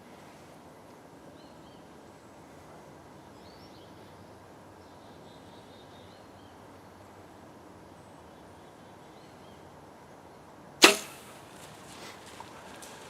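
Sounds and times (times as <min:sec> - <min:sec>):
loud sharp burst: 0:10.8 - 0:11.6.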